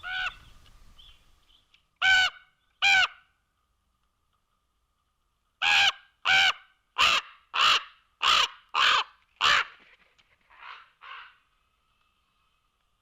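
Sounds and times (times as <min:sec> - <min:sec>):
raven calling: 0:00.0 - 0:00.4, 0:05.6 - 0:09.8, 0:10.5 - 0:11.5.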